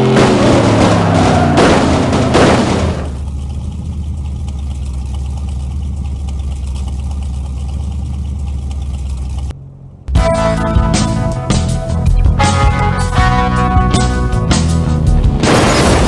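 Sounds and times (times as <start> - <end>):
car engine idling: 0.0 - 15.5
music: 10.1 - 15.8.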